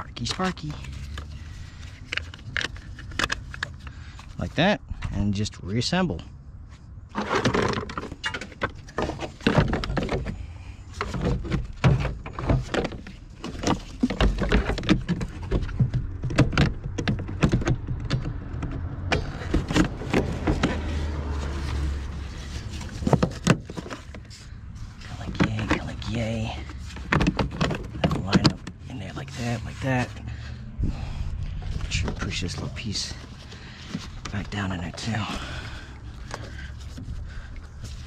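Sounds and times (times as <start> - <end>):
plastic trim parts clicking and rattling: 0.0 - 3.9
low rumble: 29.2 - 33.8.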